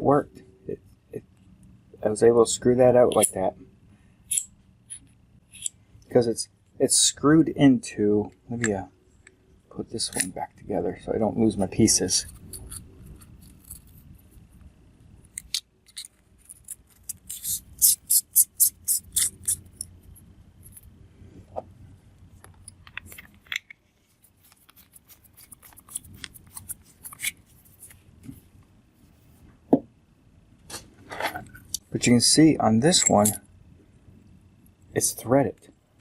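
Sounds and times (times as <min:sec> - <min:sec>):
small parts clicking: 0:04.2 - 0:05.8, 0:12.2 - 0:14.1, 0:15.2 - 0:20.9.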